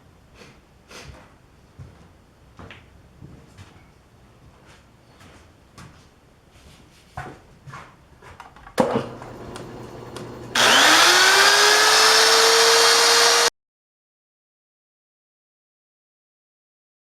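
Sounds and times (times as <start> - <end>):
power tool motor whine: 9.1 - 13.5.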